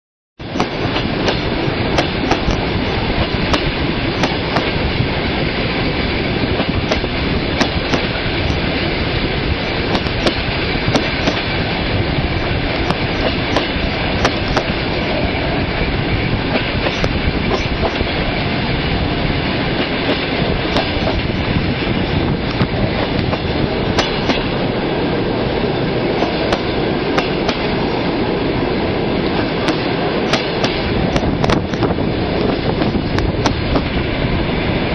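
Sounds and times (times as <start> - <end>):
train wheels clattering over rail joints: 0.4 - 24.8, 25.6 - 28.4, 29.1 - 34.0.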